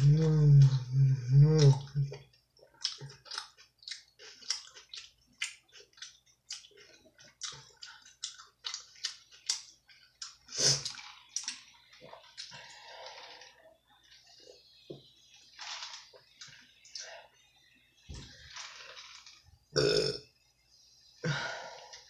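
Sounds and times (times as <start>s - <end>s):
chewing with wet mouth smacks: 2.2s - 12.5s.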